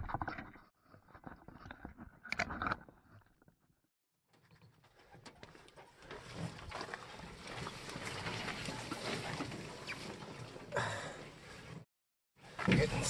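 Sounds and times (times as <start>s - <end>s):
branches rustling and scraping: 6.3s - 10.6s.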